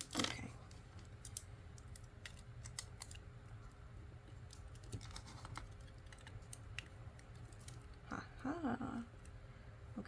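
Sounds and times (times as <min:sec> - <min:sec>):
low steady hum: 0:00.0 - 0:10.0
plastic pieces clicking: 0:04.5 - 0:07.9.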